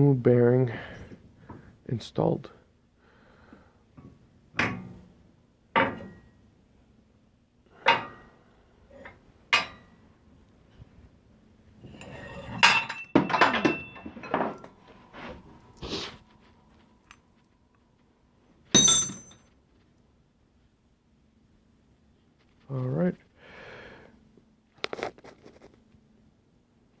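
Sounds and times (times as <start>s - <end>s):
ringing metallic clanks: 11.9s - 14.7s, 18.7s - 19.5s
metal tools knocking and clinking: 12.0s - 14.8s, 18.7s - 19.5s.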